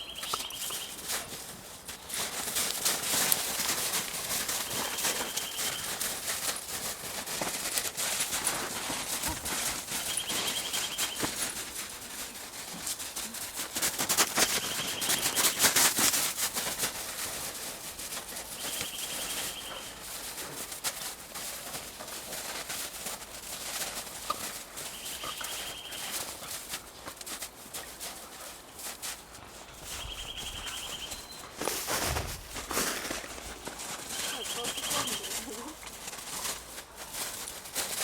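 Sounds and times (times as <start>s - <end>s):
footsteps through forest litter: 0.0s - 38.0s
trilled bird call: 29.9s - 31.5s.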